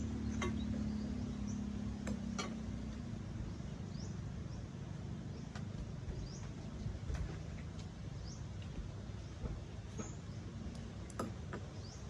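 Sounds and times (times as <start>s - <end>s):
small bird chirping: 0.0s - 4.7s, 8.1s - 12.0s.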